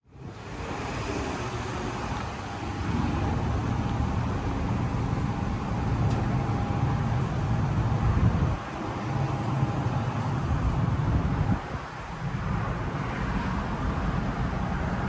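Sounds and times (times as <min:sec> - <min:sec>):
fan noise: 0:00.1 - 0:15.0
compressor hum: 0:00.4 - 0:12.4.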